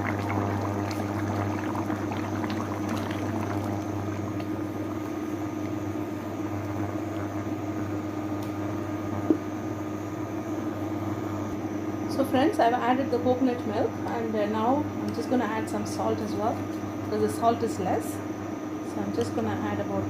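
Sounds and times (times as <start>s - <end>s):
curry bubbling in pot: 0.0s - 12.1s.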